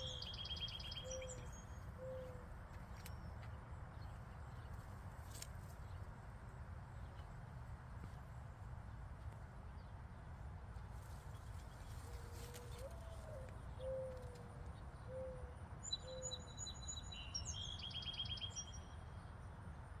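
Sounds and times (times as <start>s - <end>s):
small birds chirping and trilling: 0.0s - 6.1s, 10.9s - 19.1s
bird cooing: 1.0s - 2.5s, 12.1s - 16.3s.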